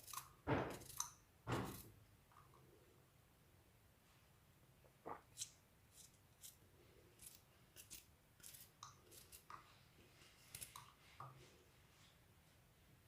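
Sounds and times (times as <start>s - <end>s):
knife cutting garlic: 0.0s - 2.0s, 7.2s - 9.5s.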